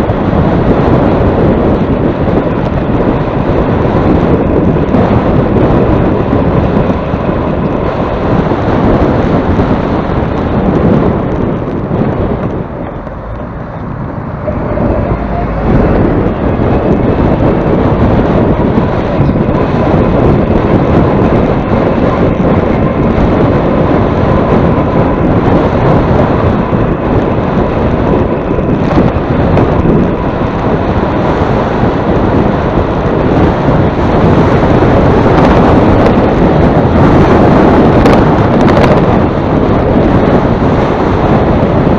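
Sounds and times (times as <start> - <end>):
wind buffeting microphone: 0.0 - 41.9.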